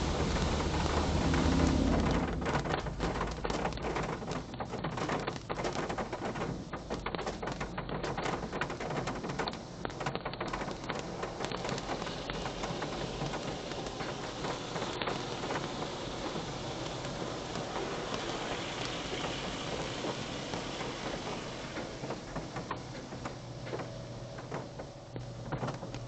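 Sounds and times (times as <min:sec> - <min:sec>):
water jets spraying on car: 0:00.0 - 0:05.8, 0:10.3 - 0:23.4.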